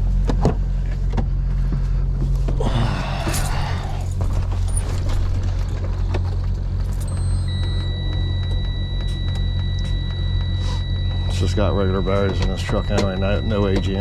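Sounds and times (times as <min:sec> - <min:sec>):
engine humming: 0:00.0 - 0:14.0
high-pitched warning tone: 0:06.9 - 0:14.0.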